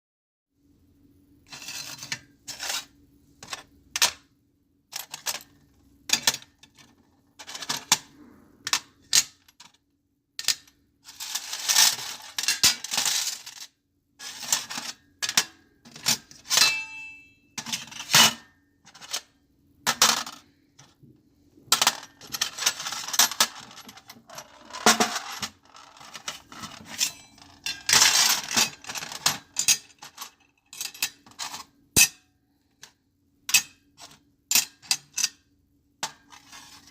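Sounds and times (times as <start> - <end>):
faint steady hum: 0.6 - 36.9
metal objects clinking on tray: 16.0 - 18.4, 24.8 - 32.2.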